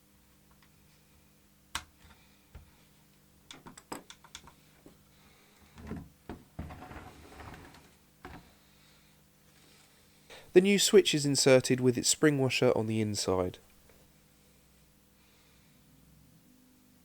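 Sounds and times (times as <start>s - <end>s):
rustling and scraping: 5.7s - 8.5s.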